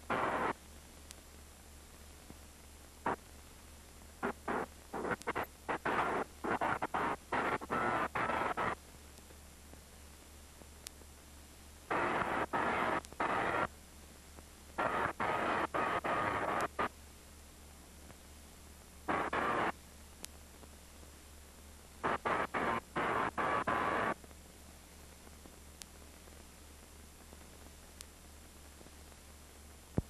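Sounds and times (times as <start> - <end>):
steady low hum: 0.0 - 30.0
tesla coil crackling sparks: 0.1 - 1.2, 4.2 - 9.4, 11.9 - 13.7, 14.7 - 16.9, 19.1 - 20.4, 22.0 - 24.3.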